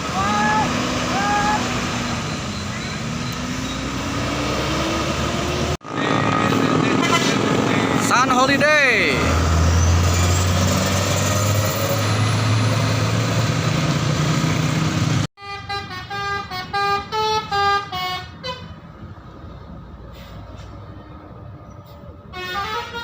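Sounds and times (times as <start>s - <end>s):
bus engine running: 0.0s - 23.0s
bus horn playing tune: 15.4s - 18.8s, 22.3s - 23.0s.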